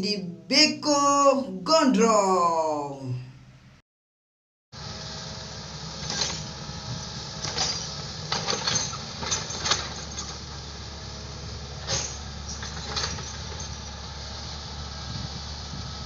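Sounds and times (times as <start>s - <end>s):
excavator diesel engine running: 4.8s - 16.0s
metallic clanks and scrapes: 6.0s - 6.5s, 7.4s - 10.4s, 11.8s - 13.8s.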